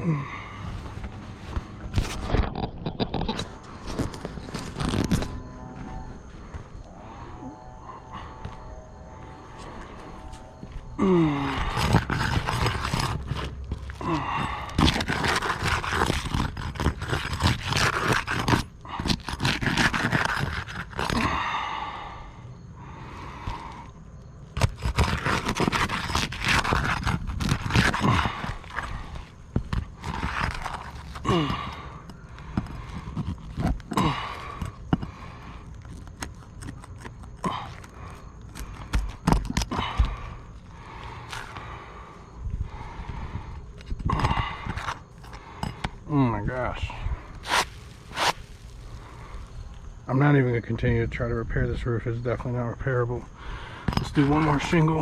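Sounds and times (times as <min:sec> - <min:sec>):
shingles scraping and crunching: 0:00.6 - 0:05.4, 0:11.4 - 0:21.4, 0:24.4 - 0:41.9, 0:43.8 - 0:50.4, 0:53.4 - 0:55.0.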